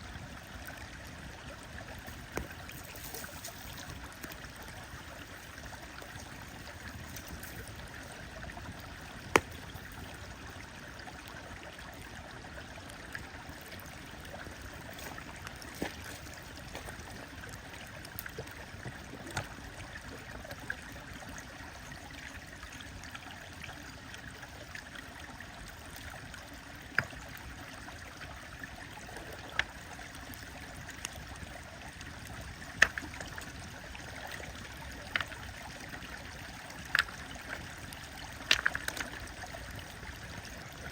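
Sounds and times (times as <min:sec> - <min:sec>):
stream flowing: 0:00.0 - 0:40.9
wood fire crackling and popping: 0:09.3 - 0:09.9, 0:38.4 - 0:39.2.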